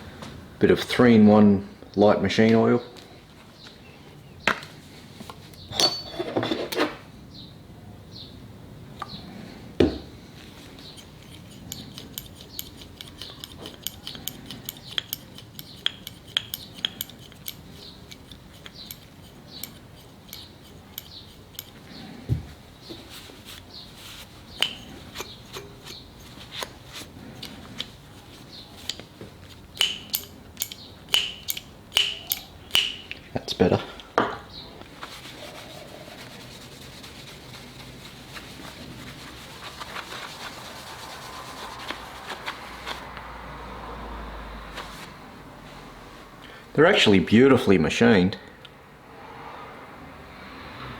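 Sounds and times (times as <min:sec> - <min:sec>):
metallic clicks and clinks: 0:11.0 - 0:21.9, 0:24.5 - 0:26.7, 0:28.8 - 0:33.3.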